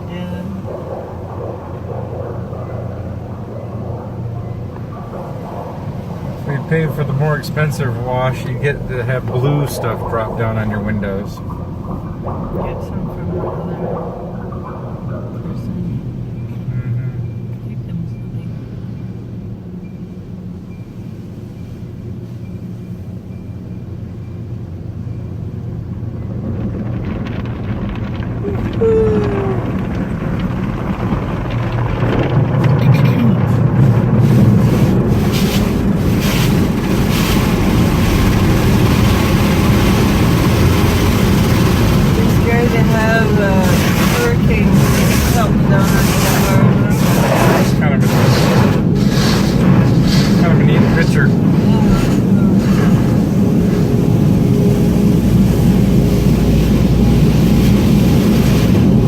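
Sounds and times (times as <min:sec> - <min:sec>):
car wash water spray: 0:28.4 - 0:59.0.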